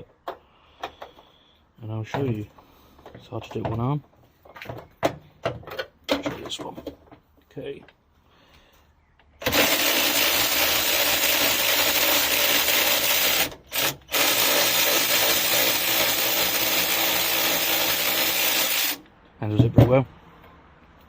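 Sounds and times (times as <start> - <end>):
cordless ratchet wrench whirring: 9.4 - 19.0.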